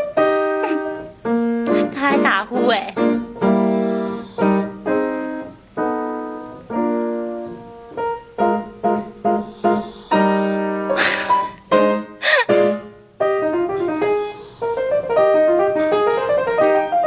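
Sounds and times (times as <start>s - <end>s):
piano notes and chords: 0.0s - 17.0s
hissy rasp: 3.4s - 4.9s, 9.2s - 11.6s, 13.8s - 15.2s.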